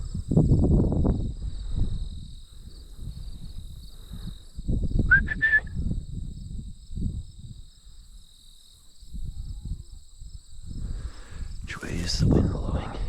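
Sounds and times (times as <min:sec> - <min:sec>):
crickets trilling: 0:00.0 - 0:13.0
whistle-like chirp: 0:05.1 - 0:05.8.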